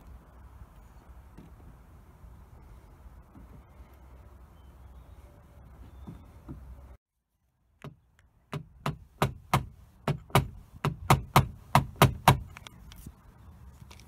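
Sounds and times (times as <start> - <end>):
hammer tapping on car panel: 7.8 - 12.5.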